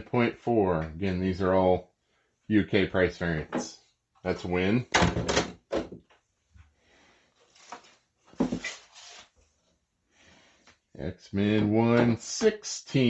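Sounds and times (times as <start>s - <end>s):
plastic slabs knocking and clicking: 4.9s - 6.2s.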